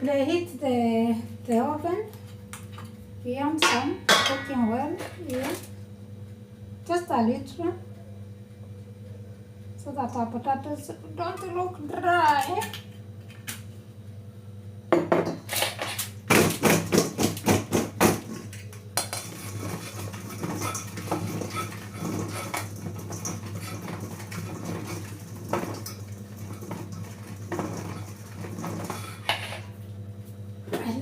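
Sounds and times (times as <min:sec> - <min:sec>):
utensils and dishware clattering: 0:03.7 - 0:05.6.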